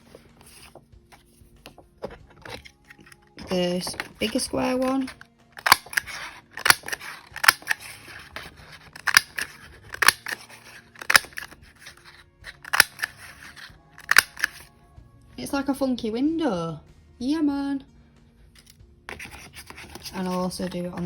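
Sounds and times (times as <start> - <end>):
paper rustling: 0.0 - 14.6, 19.1 - 21.0
hole punch clicking through paper: 2.4 - 14.6.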